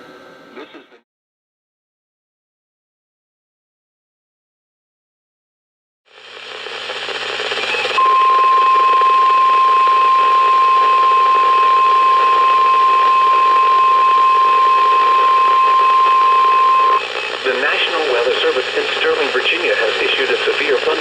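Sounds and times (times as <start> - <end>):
radio reception hiss: 6.2 - 21.0.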